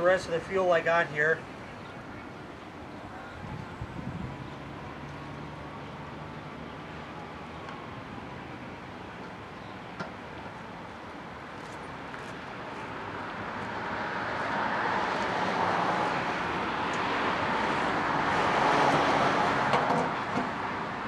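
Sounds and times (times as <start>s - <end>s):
vehicle passing by: 12.9s - 21.0s.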